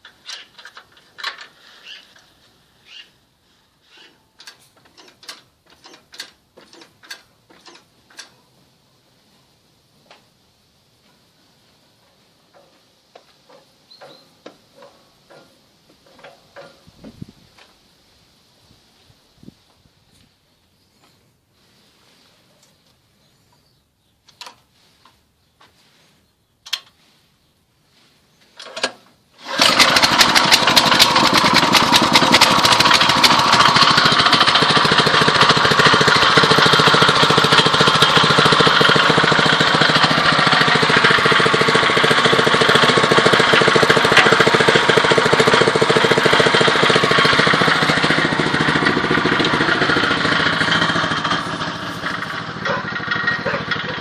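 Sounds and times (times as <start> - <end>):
small tractor engine running: 4.4 - 8.3, 28.6 - 54.0.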